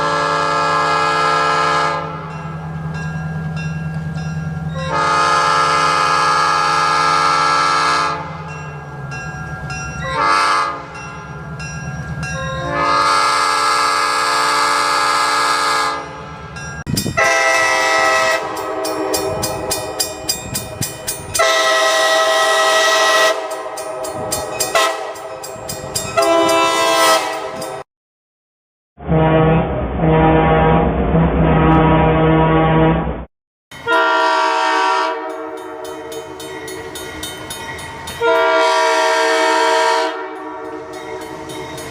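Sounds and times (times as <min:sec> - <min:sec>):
train horn blasts: 0:00.0 - 0:02.4, 0:04.8 - 0:08.5, 0:10.0 - 0:11.0, 0:12.5 - 0:16.4, 0:17.1 - 0:27.8, 0:29.0 - 0:33.0, 0:33.7 - 0:36.5, 0:38.1 - 0:41.6.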